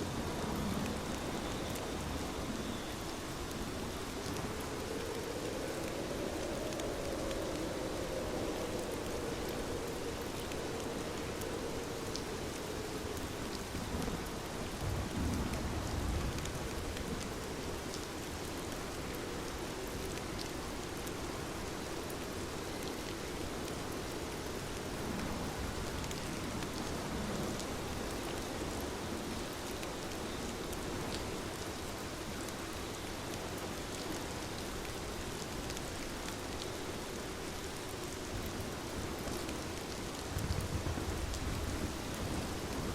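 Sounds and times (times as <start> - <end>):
fireplace fire crackling: 0.0 - 15.1
steady rainfall: 0.0 - 42.9.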